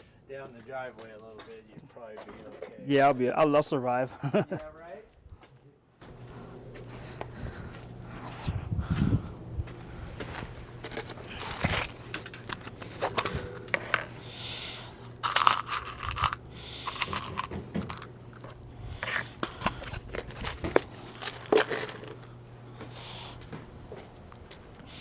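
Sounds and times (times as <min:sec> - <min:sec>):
bicycle parts clicking and scraping: 0:10.2 - 0:22.3.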